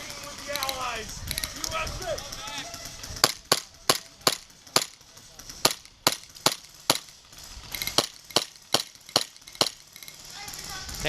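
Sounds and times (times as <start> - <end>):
airsoft gun shots: 3.2 - 10.0.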